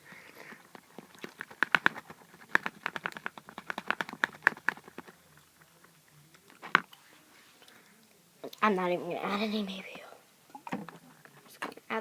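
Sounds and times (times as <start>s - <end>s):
slime stirred in plastic container: 0.4s - 5.8s.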